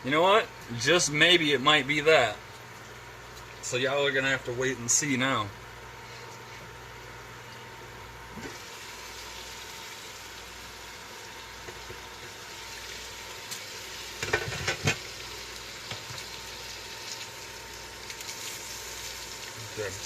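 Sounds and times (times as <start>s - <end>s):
bacon sizzling in a frying pan: 8.3s - 20.0s.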